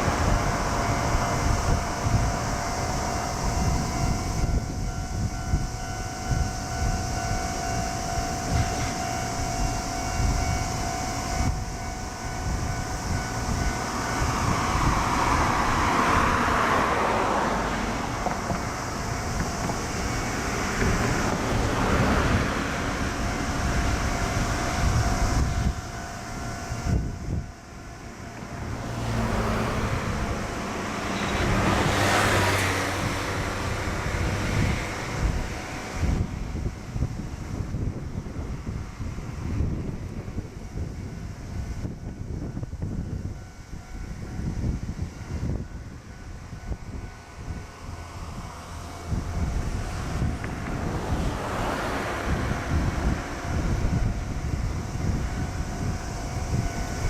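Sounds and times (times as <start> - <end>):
steady ringing tone: 0.0 - 57.0
train passing: 0.0 - 57.0
wind buffeting microphone: 0.0 - 57.0.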